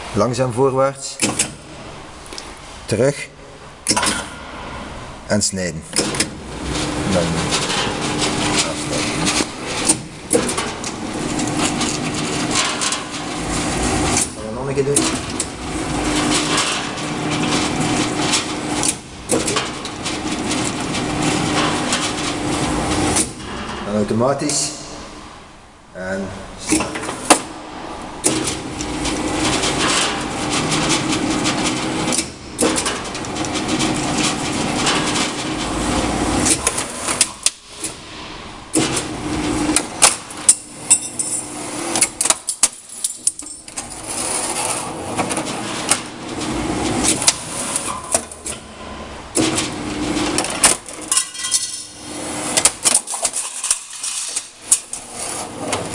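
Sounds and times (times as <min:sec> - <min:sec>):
machine motor hum: 0:05.9 - 0:23.8.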